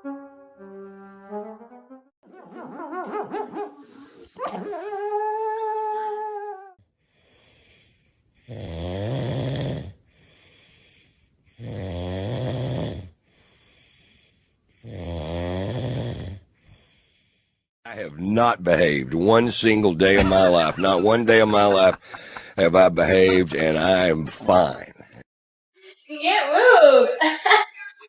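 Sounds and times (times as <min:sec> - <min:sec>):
dog snoring: 0:08.4 - 0:10.0, 0:11.5 - 0:13.2, 0:14.7 - 0:16.5.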